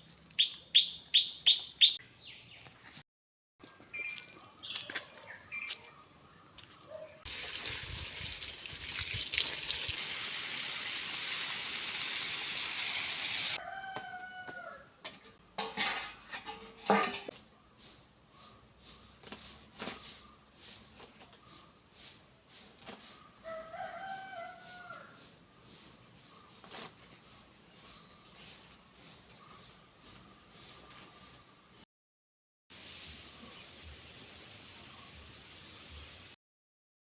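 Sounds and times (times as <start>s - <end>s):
rooster crowing: 13.5s - 15.0s, 23.4s - 25.3s.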